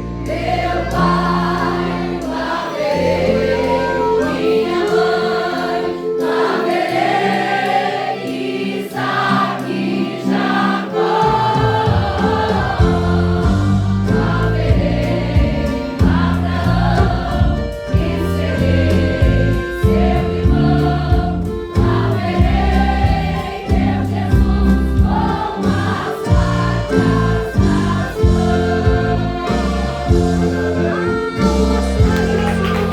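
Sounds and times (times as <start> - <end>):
choir singing gospel song: 0.0 - 32.9
bass and drums: 11.5 - 32.9.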